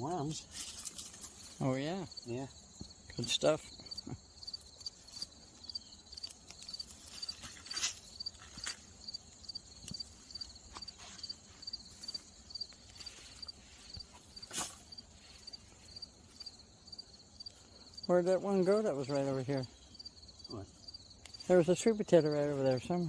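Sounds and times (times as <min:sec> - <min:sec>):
cricket chirping: 0:00.0 - 0:23.0
digging in garden soil: 0:03.1 - 0:19.3.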